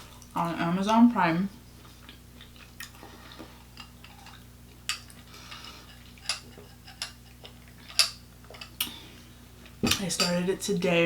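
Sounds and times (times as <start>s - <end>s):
chewing: 1.8s - 9.0s.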